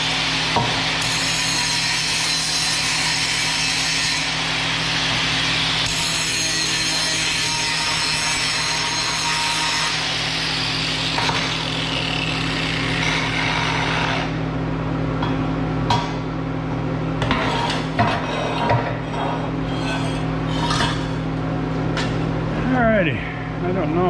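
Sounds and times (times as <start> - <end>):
harsh rasping of metal: 5.8 - 14.4, 17.2 - 21.4
steady low hum: 10.6 - 24.0
steel pieces clanking: 17.2 - 21.3.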